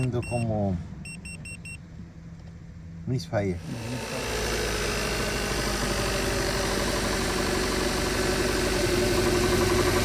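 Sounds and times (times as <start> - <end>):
car engine idling roughly: 3.6 - 10.0.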